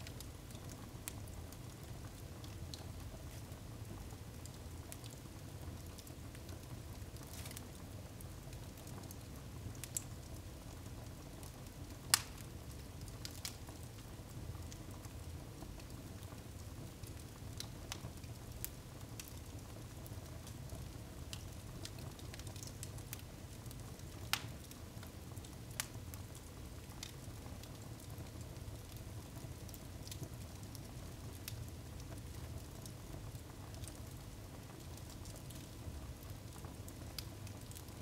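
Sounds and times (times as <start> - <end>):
wood fire crackling: 0.0 - 38.0
loud fire pops: 12.1 - 12.4.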